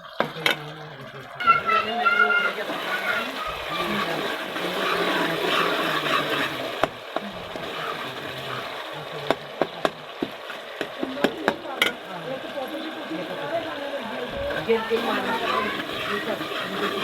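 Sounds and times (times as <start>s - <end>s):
faint voices talking: 0.0s - 17.0s
kitchen utensils knocking: 9.2s - 12.2s.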